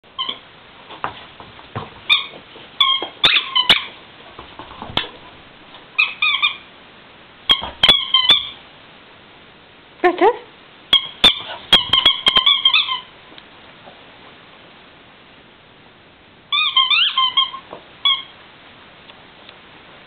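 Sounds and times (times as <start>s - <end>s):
squeaky dog toy squeaking: 0.2s - 0.4s, 2.1s - 4.0s, 6.0s - 6.7s, 7.5s - 8.6s, 10.9s - 13.1s, 16.5s - 18.4s.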